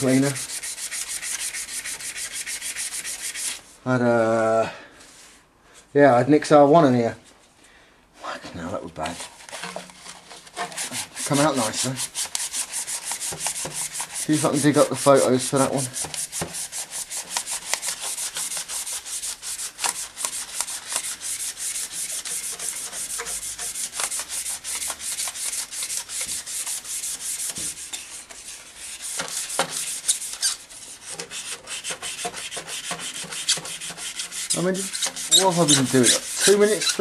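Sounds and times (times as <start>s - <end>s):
abrasive scrubbing on metal pipe: 9.1s - 37.0s.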